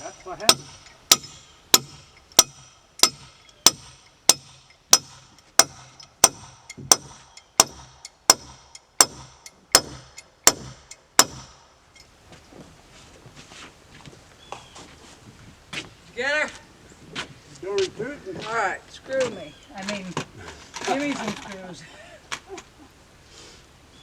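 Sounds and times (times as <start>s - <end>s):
hammer blows on wood: 0.0s - 11.6s.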